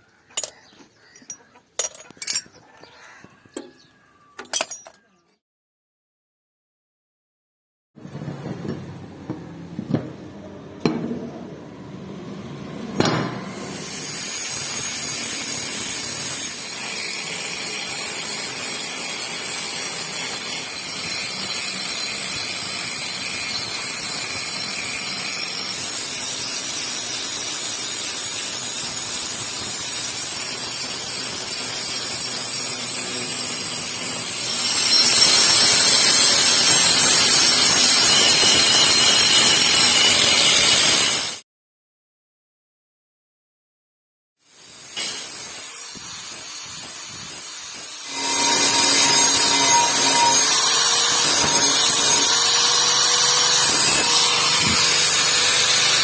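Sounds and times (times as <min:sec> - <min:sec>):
sharp metal knocks: 0:00.3 - 0:02.8, 0:03.6 - 0:03.8
grinding on steel: 0:00.4 - 0:03.8, 0:28.3 - 0:41.4, 0:44.8 - 0:56.0.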